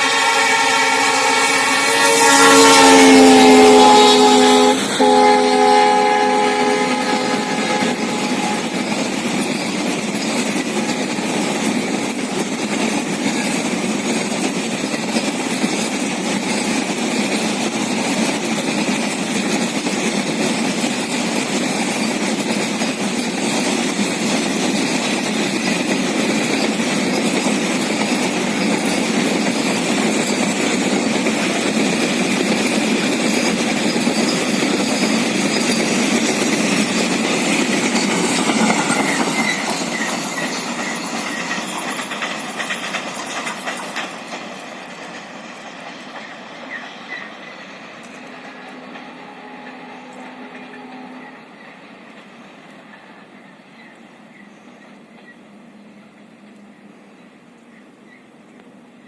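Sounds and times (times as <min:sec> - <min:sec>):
freight train wheels on rails: 0:00.0 - 0:59.0
rattling wagons: 0:06.2 - 0:52.4.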